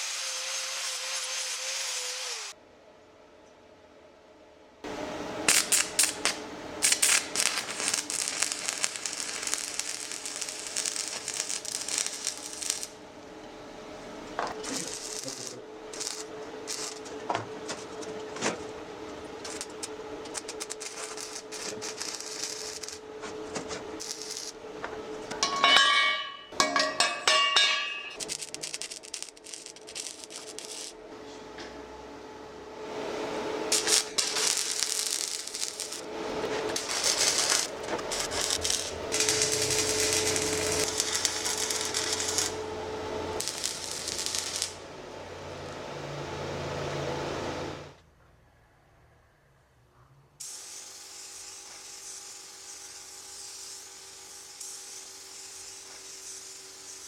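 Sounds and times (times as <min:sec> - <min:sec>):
power tool: 0:00.0 - 0:02.6, 0:05.5 - 0:13.0, 0:14.4 - 0:18.7, 0:19.4 - 0:23.3, 0:24.0 - 0:24.6, 0:28.1 - 0:31.0, 0:33.3 - 0:44.8, 0:50.4 - 0:57.0
ringing metallic clinks: 0:25.4 - 0:28.2.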